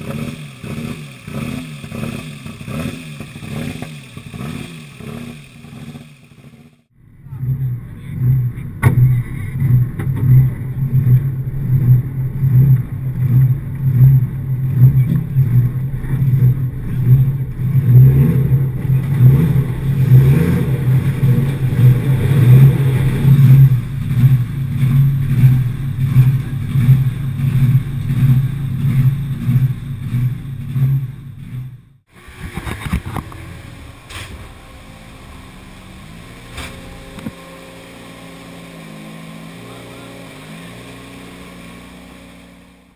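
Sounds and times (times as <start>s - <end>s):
rally car engine pulsing: 0.0s - 42.9s
quiet engine hum: 6.9s - 32.4s.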